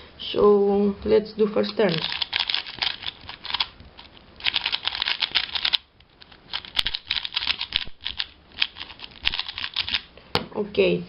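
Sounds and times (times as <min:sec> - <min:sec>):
speed cube plastic clicking: 0:01.7 - 0:10.1.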